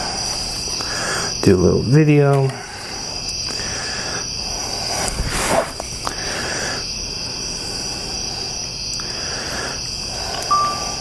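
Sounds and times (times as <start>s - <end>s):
night insects trilling: 0.0s - 11.0s
loud rustle: 5.0s - 5.9s.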